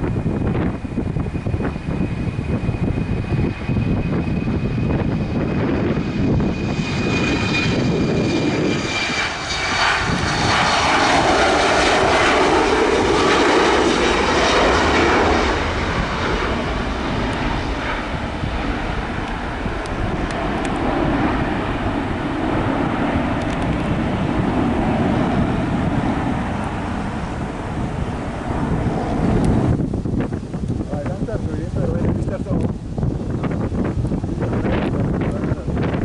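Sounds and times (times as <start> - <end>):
aircraft flying past: 0.0 - 36.0
wind rumbling on microphone: 0.0 - 36.0.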